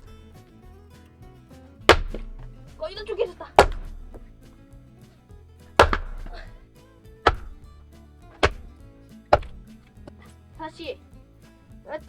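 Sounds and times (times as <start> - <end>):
axe chopping log: 1.6 - 10.9.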